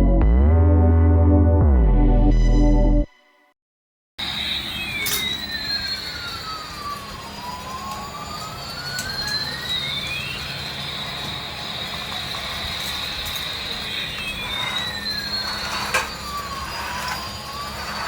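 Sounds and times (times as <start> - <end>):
toy jet engine sound effect: 4.3 - 18.0.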